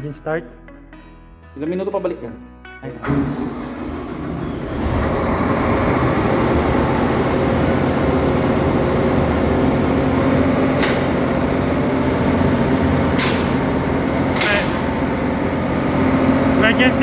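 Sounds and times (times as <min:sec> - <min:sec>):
generator engine running: 0:03.0 - 0:17.0
short click: 0:14.3 - 0:14.8.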